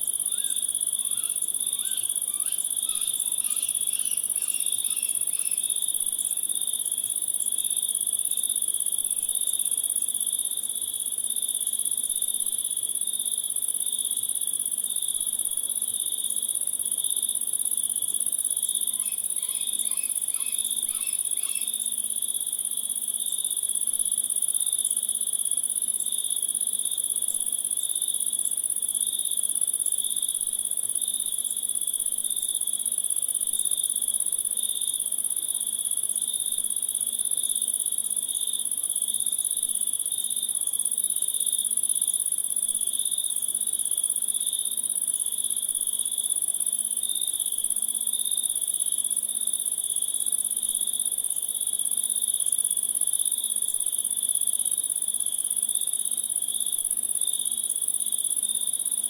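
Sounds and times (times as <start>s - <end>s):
high cricket trill: 0.1s - 6.1s, 18.7s - 22.0s
pulsing cricket chirping: 0.1s - 6.7s, 18.6s - 22.0s.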